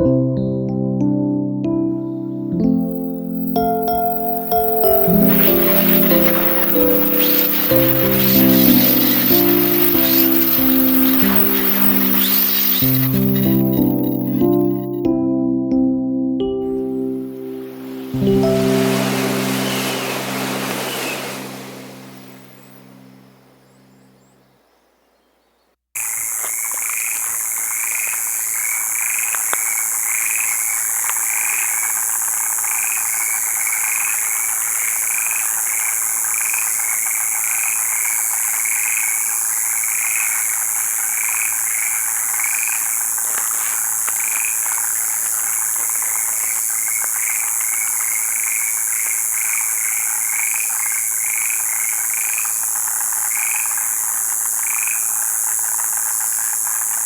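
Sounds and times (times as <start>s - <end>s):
steady high-pitched hiss: 2.2s - 15.0s, 16.8s - 25.3s, 26.0s - 57.0s
frogs croaking in chorus: 4.4s - 14.9s, 26.0s - 57.0s.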